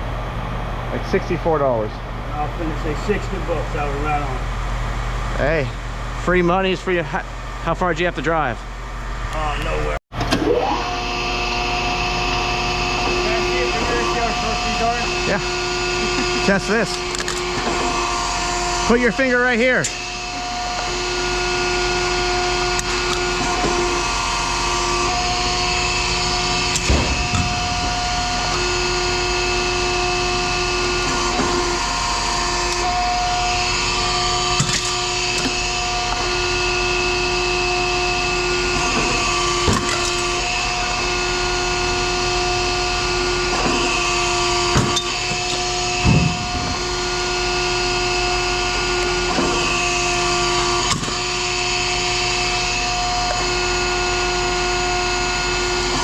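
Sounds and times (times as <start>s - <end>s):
steady machinery noise: 0.0s - 56.0s
humming tone: 19.9s - 56.0s.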